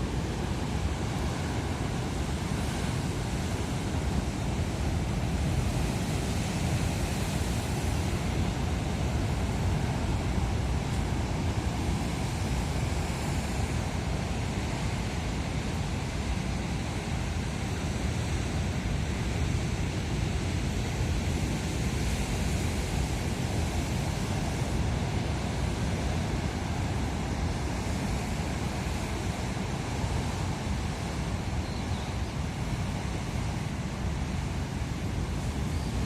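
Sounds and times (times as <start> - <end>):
sea waves washing onto shore: 0.0 - 36.0.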